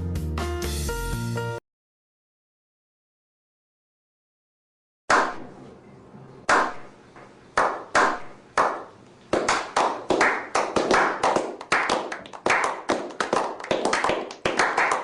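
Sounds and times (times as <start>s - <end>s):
sharp clap-like percussive hits: 5.1s - 5.5s, 6.5s - 7.0s, 7.6s - 15.0s.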